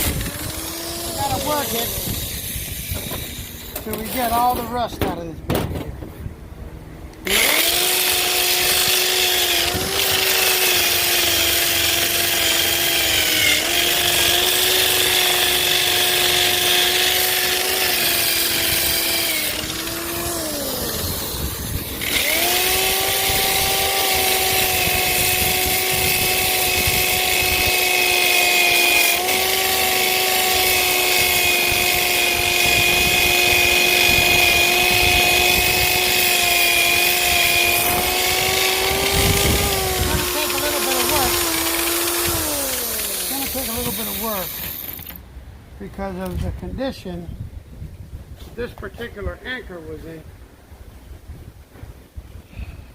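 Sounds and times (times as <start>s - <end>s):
electric sander motor whine: 0.0s - 3.9s, 7.2s - 45.2s
grinding wheel rasping on metal: 0.0s - 4.6s, 7.3s - 45.2s.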